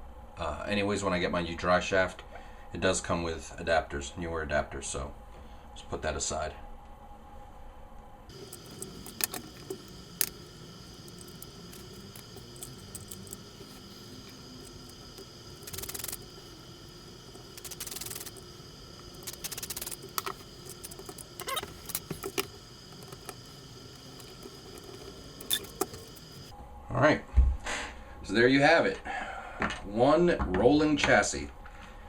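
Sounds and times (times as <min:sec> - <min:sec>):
small parts clicking and rattling: 0:08.3 - 0:26.5.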